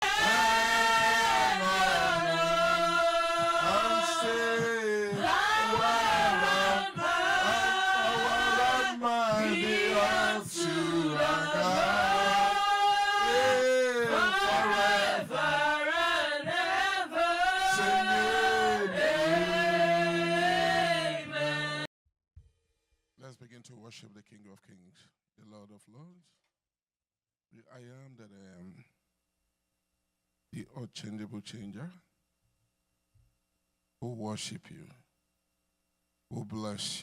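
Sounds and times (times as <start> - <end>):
man singing worship chant: 0.0 - 21.9.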